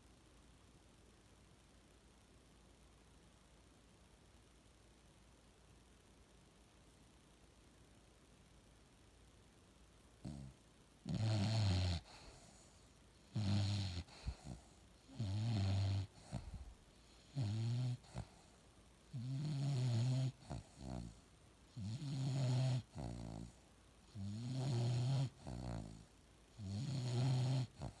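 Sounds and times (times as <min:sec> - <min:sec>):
dog snoring: 0:10.2 - 0:28.0.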